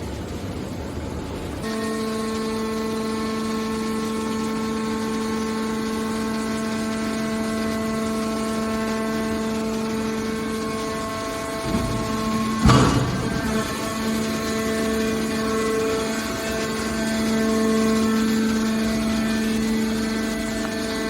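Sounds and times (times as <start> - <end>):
hydraulic power unit whine: 0.0 - 21.0
brief rough machine noise: 10.3 - 17.7.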